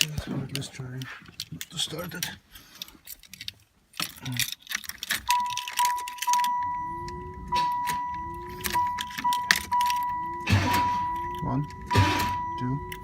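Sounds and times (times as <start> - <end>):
keys jangling: 2.8 - 6.6
dashboard warning chime: 5.3 - 13.0
engine cranking whine: 6.4 - 13.0.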